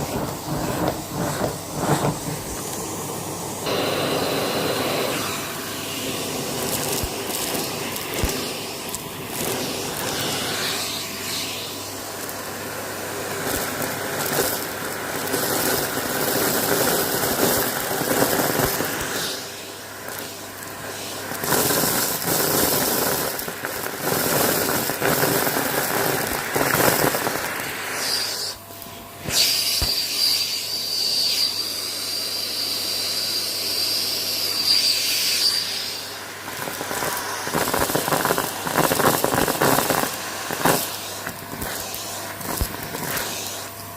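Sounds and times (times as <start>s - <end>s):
crunching and crackling: 36.6s - 43.3s.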